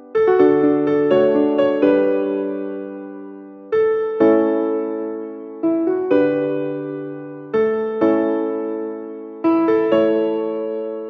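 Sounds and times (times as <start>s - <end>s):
electric piano music: 0.0s - 11.0s.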